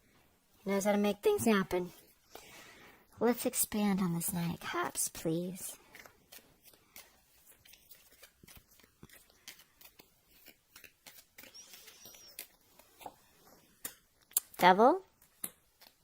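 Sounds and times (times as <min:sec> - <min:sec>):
cards being shuffled: 0:05.6 - 0:13.3.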